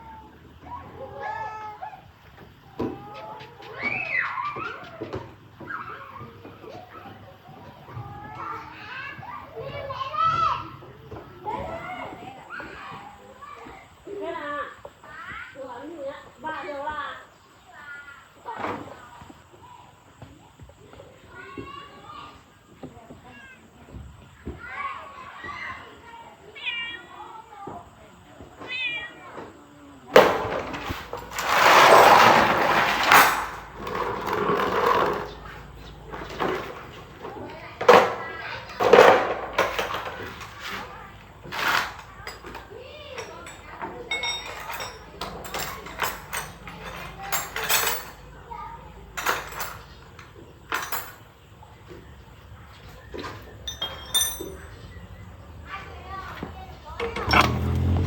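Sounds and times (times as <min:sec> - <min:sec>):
metal objects clinking and knocking: 0:30.2 - 0:51.3, 0:53.1 - 0:55.0, 0:57.0 - 0:58.0
high metallic ringing: 0:53.6 - 0:54.9.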